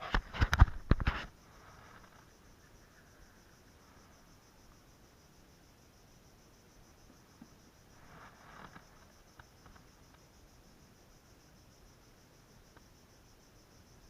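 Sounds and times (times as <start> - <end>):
soft rustle: 0.0 - 2.8, 7.0 - 10.4
insects trilling: 0.0 - 14.0.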